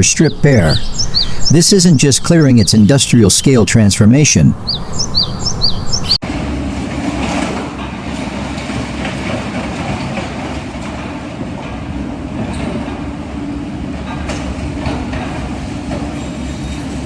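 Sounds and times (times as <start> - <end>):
bird chirping: 0.0 - 6.2
heavy machine engine droning: 4.5 - 17.0.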